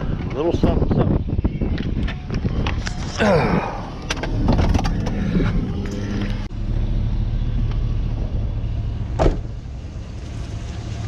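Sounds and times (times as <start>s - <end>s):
vehicle engine drone: 1.8s - 11.0s.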